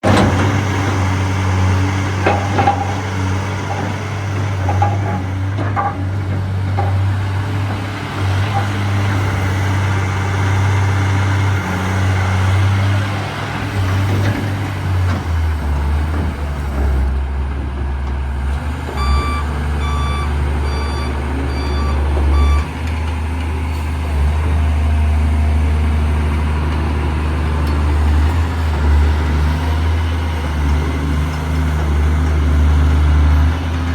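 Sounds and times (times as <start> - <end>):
diesel engine running: 0.0 - 33.9
travel alarm short beeps: 19.0 - 22.7.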